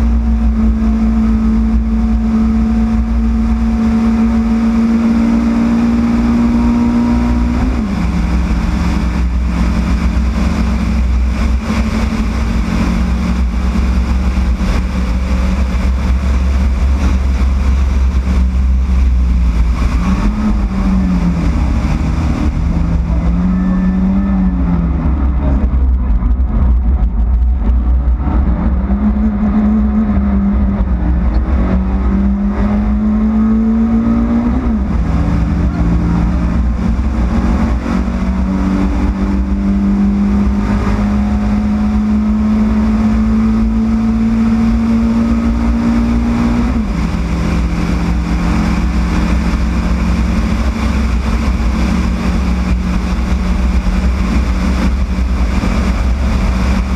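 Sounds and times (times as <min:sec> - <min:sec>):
race car engine running hard: 0:00.0 - 0:56.9.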